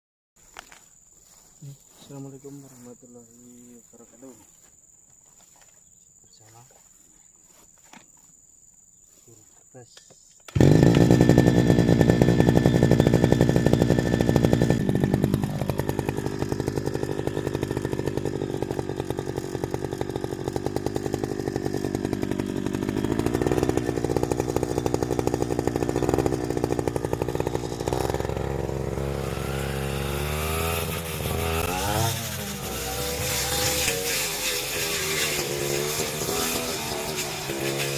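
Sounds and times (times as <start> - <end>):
brush cutter engine running: 10.5 - 37.9.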